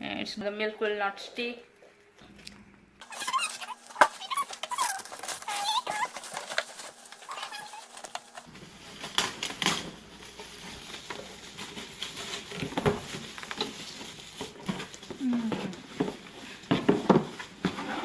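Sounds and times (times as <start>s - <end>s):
short high squeaks: 3.0s - 6.1s
packaging rustling: 3.0s - 18.0s.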